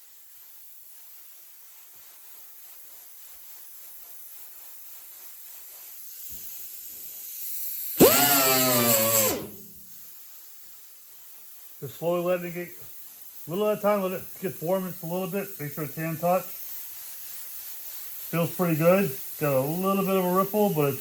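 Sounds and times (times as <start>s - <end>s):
grinder whining: 8.0s - 9.9s.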